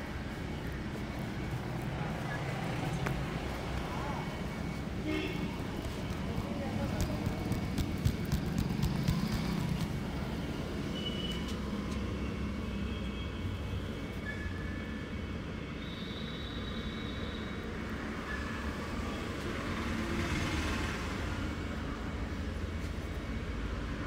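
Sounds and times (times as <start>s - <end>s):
low traffic rumble: 0.0s - 14.2s.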